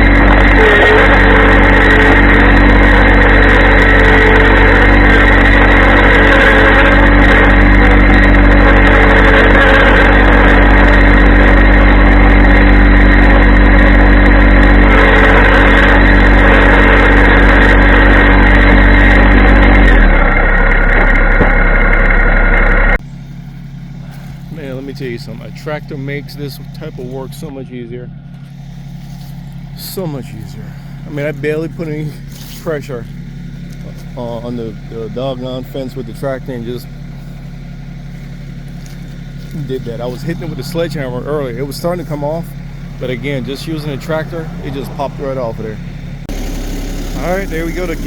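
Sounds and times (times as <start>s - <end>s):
tractor diesel engine running: 0.0s - 48.0s.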